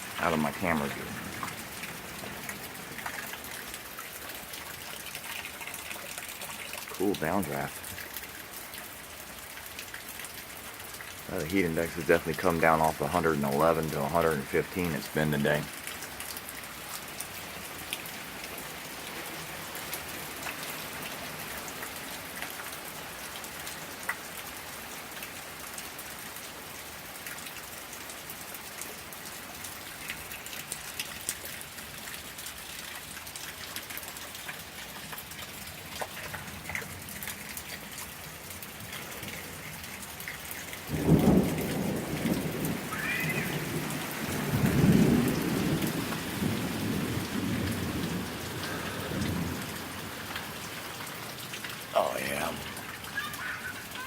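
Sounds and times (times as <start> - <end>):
thunder rumbling: 0.0 - 3.1, 40.9 - 50.2
raindrop ticks: 0.0 - 18.6, 19.7 - 20.8, 21.4 - 24.4, 27.1 - 54.0
steady rain: 0.0 - 54.0.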